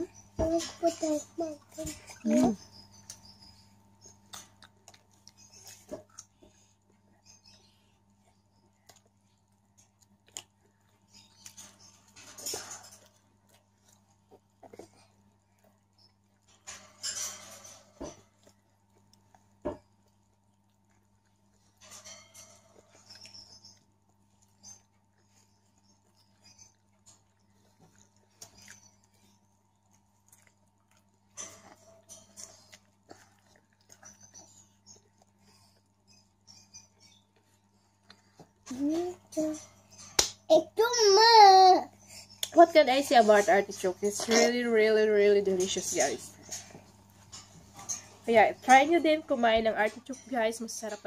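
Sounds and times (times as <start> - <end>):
chewing artichoke: 0.0 - 40.9, 41.9 - 51.0.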